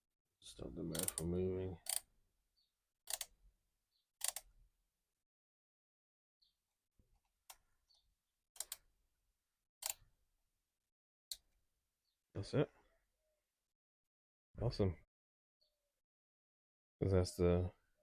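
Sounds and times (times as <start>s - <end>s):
tool clicking on bolt: 0.9s - 1.2s.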